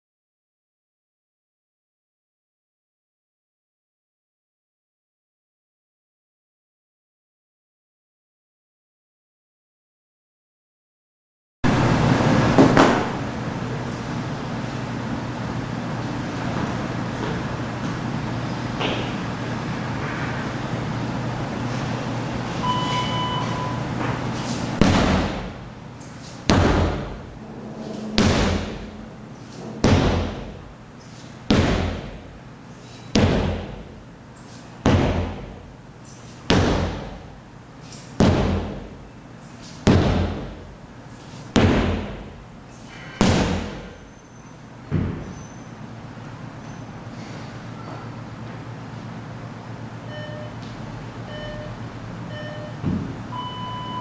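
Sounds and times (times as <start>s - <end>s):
steady background noise: 11.7s - 54.0s
sledgehammer strikes: 24.8s - 25.6s, 26.5s - 30.7s, 31.4s - 32.3s, 33.1s - 33.9s, 34.8s - 35.6s, 36.5s - 37.2s, 38.2s - 38.9s, 39.8s - 40.6s, 41.5s - 42.3s, 43.0s - 44.0s.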